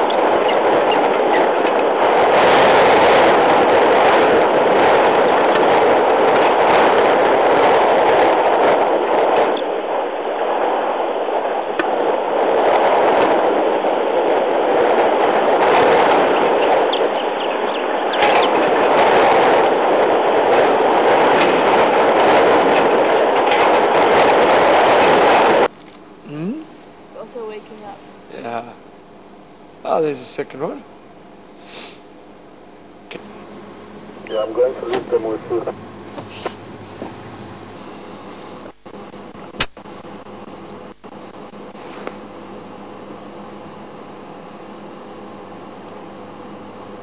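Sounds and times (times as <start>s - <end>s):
vehicle engine rumble: 32.9s - 44.3s
road noise: 33.1s - 40.6s.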